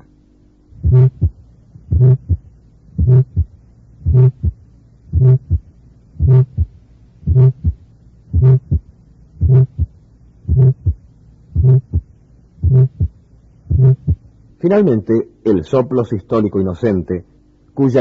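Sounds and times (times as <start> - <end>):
humming heart murmur: 0.0 - 14.4
heartbeat through stethoscope: 0.8 - 14.3.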